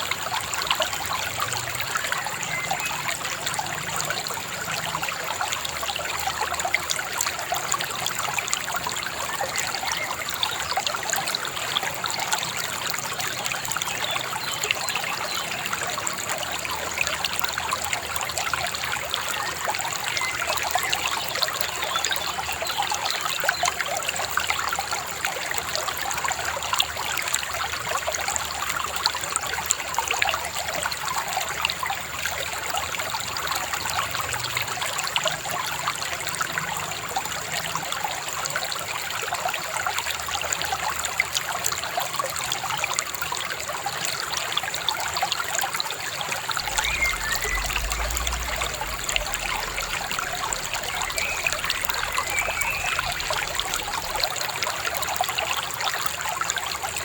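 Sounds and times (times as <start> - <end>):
river babbling: 0.0 - 29.0, 44.3 - 57.0.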